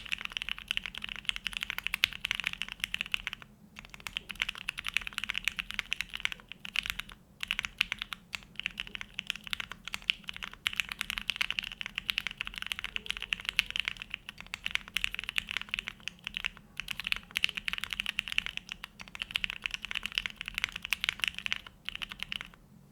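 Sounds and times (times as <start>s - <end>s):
fast mechanical keyboard typing: 0.0s - 22.6s.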